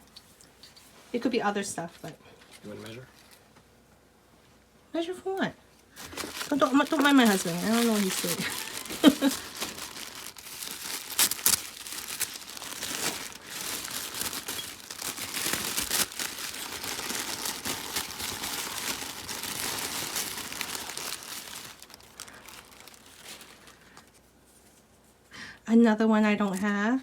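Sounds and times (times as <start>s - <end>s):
wrapping paper crinkling: 5.9s - 24.9s.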